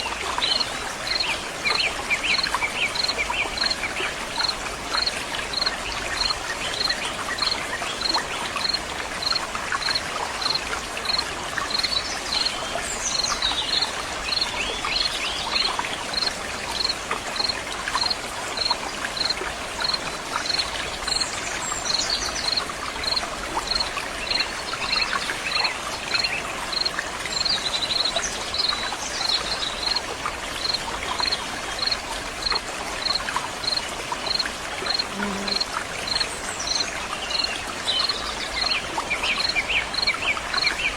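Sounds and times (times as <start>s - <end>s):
running water: 0.0s - 40.9s
insect chirping: 4.4s - 12.5s, 13.1s - 21.2s, 26.2s - 26.9s, 30.6s - 36.2s.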